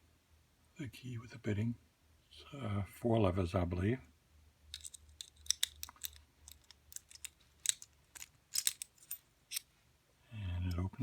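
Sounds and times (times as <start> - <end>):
key clicking in padlock: 4.8 - 9.6.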